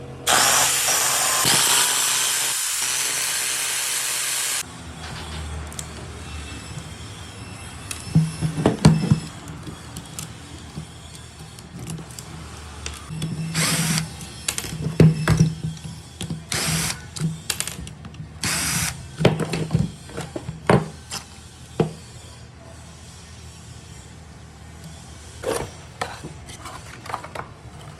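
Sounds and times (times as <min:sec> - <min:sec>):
angle grinder whining: 0:00.0 - 0:04.7
small power drill running: 0:00.3 - 0:04.6, 0:13.5 - 0:14.2, 0:16.5 - 0:17.0, 0:18.4 - 0:19.0.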